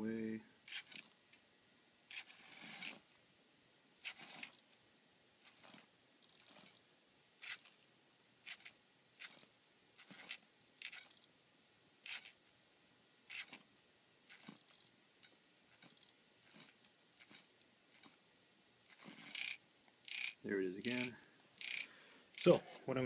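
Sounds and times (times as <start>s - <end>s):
electric motor whine bursts: 2.1s - 3.0s, 4.0s - 4.6s, 18.9s - 20.3s.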